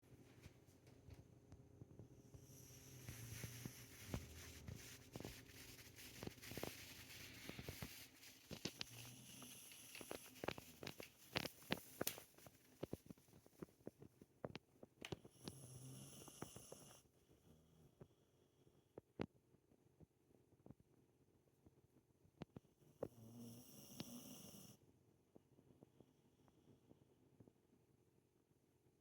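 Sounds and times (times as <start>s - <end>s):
dog snoring softly: 2.2s - 4.8s, 8.5s - 12.0s, 15.2s - 18.1s, 23.0s - 24.8s.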